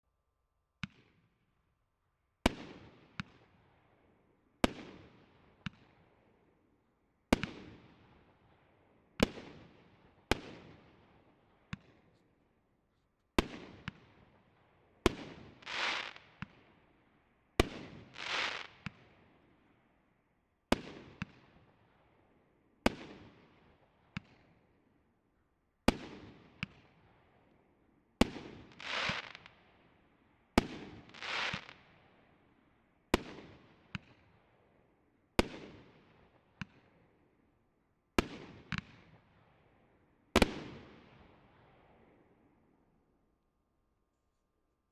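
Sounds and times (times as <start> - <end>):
small firework pops: 0.8 - 1.3, 11.7 - 12.3, 15.1 - 16.7, 17.6 - 19.1, 28.2 - 29.7, 30.6 - 32.0, 33.2 - 34.3, 36.6 - 36.9, 38.2 - 39.3
firework bangs: 15.6 - 16.2, 18.1 - 18.7, 28.7 - 29.5, 30.6 - 31.8
firework rushing sound: 18.2 - 18.6.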